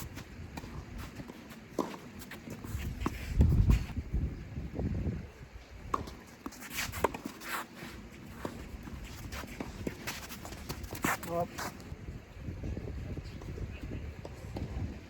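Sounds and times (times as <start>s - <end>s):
wind on microphone: 2.6s - 5.9s, 11.8s - 15.0s
footsteps on court: 5.9s - 11.9s.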